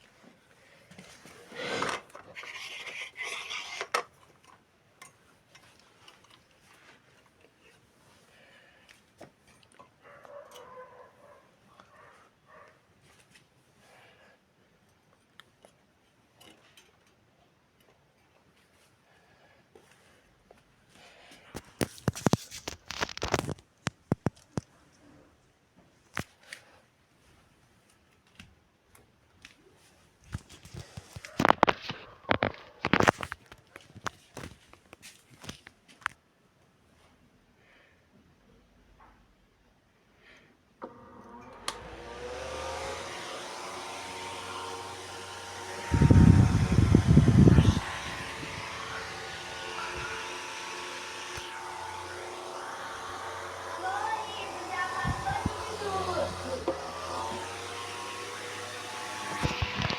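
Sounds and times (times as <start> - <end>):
industrial fan whirring: 40.8 - 59.9.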